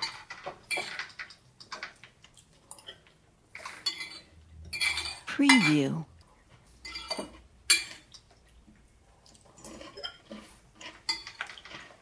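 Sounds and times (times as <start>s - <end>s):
metal cutlery clinking and scraping: 3.6s - 5.3s, 9.6s - 12.0s.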